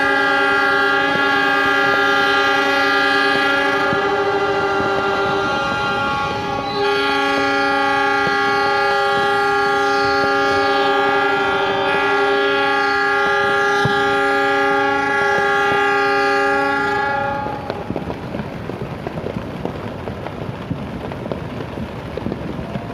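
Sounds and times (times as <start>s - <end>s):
diesel locomotive horns chord: 0.0s - 17.9s.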